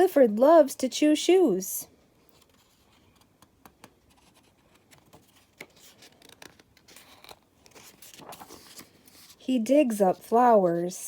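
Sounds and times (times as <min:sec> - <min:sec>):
paper pages rustling: 0:02.2 - 0:10.4.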